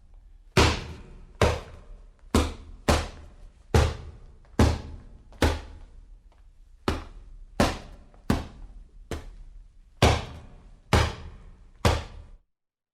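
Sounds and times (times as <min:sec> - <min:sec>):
sharp punch hits: 0:00.6 - 0:01.7.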